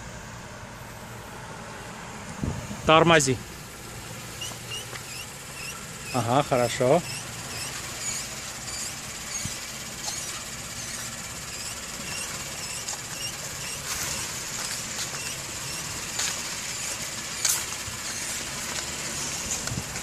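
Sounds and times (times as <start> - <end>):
brakes squeaking: 0.0 - 20.0
low car hum: 0.0 - 20.0
brake creaks: 4.0 - 20.0.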